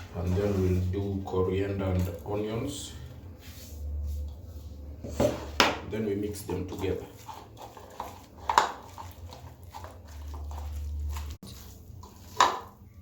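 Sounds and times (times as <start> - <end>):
wet squelches mixing meat: 5.8 - 13.0.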